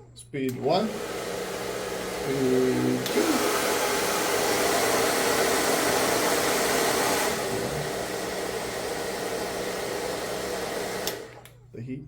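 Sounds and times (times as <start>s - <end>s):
hair dryer blowing: 0.5s - 11.6s.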